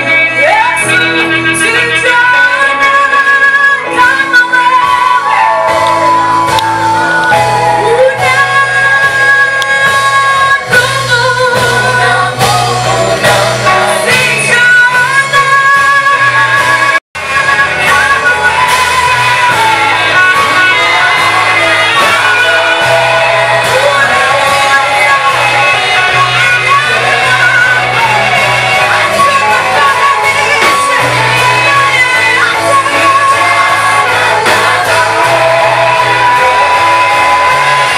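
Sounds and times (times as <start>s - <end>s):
group singing gospel song: 0.0s - 37.9s
instrumental backing with bass: 0.0s - 37.9s
congregation shouting: 17.4s - 37.9s.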